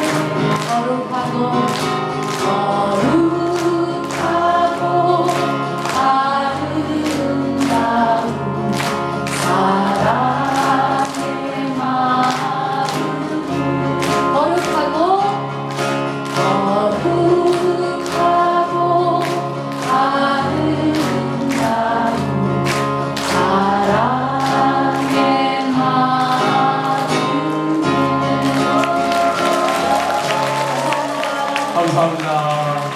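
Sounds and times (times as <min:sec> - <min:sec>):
person singing with vibrato: 0:00.0 - 0:15.6, 0:16.3 - 0:32.5
folk instrumental accompaniment: 0:00.0 - 0:32.9.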